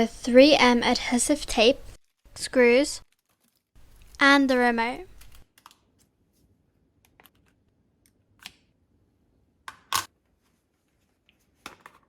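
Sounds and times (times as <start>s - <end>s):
packaging rustling: 3.0s - 4.2s.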